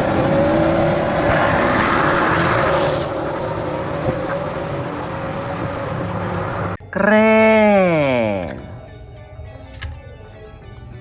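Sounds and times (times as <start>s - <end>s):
race car engine: 0.0s - 6.8s.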